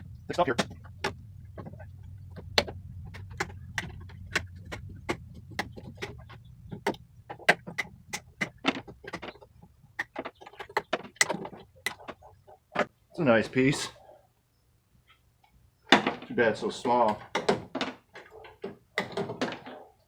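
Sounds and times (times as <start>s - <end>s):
faint low hum: 0.0s - 10.0s
sharp metallic clicks and taps: 0.3s - 12.9s.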